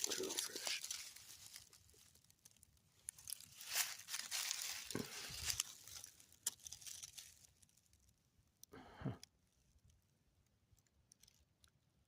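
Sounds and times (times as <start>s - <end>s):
footsteps crunching forest litter: 0.0s - 7.7s.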